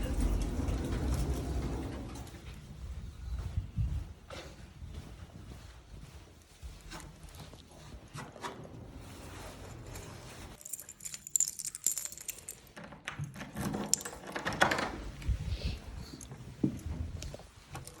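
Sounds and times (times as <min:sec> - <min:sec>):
small metal pieces jingling: 0:10.6 - 0:12.8.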